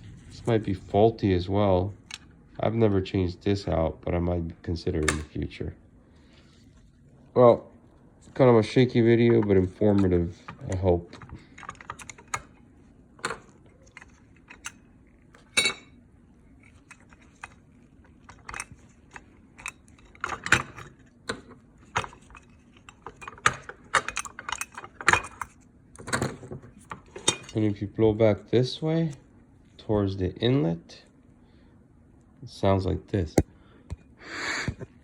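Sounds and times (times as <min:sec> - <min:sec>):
small metal parts clinking: 0:16.7 - 0:25.6.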